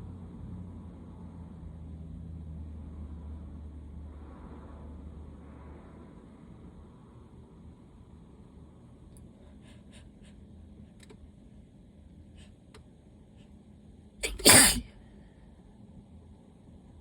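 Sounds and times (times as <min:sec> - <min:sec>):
faint short sounds: 0:14.2 - 0:14.9
person sneezing: 0:14.2 - 0:14.9.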